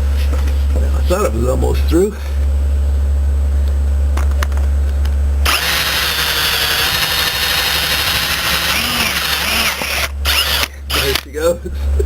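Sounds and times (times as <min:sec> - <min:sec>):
power drill cutting into wood: 0:05.4 - 0:11.3.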